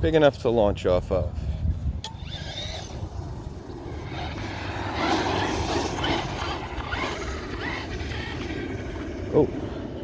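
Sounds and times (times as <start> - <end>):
tyres and drivetrain noise: 1.7 - 10.0
rc truck motor whining: 2.0 - 9.9.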